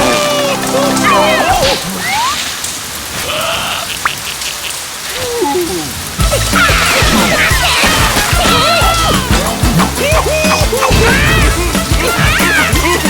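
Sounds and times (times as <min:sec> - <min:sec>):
squealing cartoon voices: 0:00.0 - 0:02.6, 0:03.2 - 0:13.0
even hiss: 0:00.2 - 0:13.0
music with heavy bass: 0:06.2 - 0:13.0.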